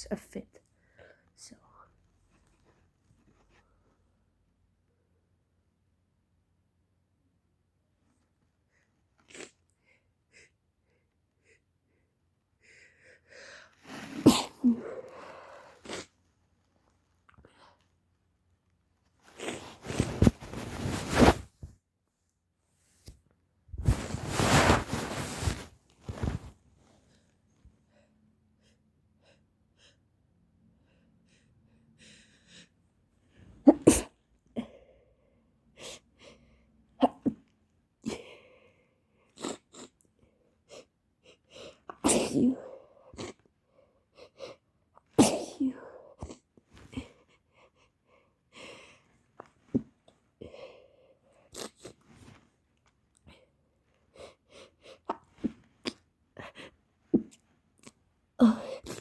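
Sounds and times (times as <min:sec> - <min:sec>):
person sneezing: 0:13.9 - 0:15.3, 0:33.6 - 0:34.2, 0:41.9 - 0:43.4, 0:45.2 - 0:46.0, 0:58.4 - 0:59.0
soft handkerchief rustles: 0:19.2 - 0:21.9, 0:22.9 - 0:27.1.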